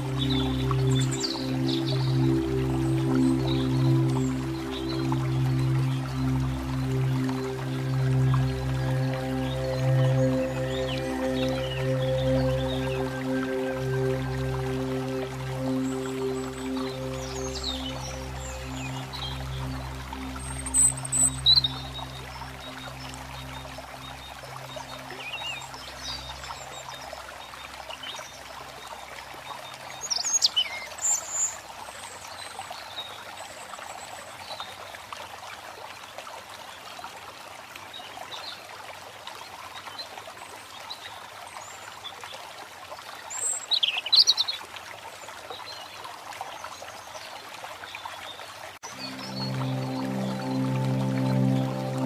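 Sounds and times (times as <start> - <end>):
birds chirping: 0.0 - 26.4, 48.8 - 52.0
low music tones: 0.0 - 29.5, 48.8 - 52.0
stream running water: 0.0 - 52.0.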